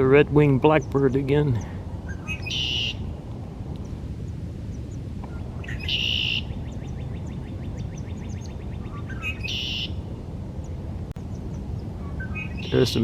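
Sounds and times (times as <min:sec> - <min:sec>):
low background rumble: 0:00.0 - 0:13.0
blackbird singing: 0:00.6 - 0:03.1, 0:05.3 - 0:10.0, 0:11.3 - 0:13.0.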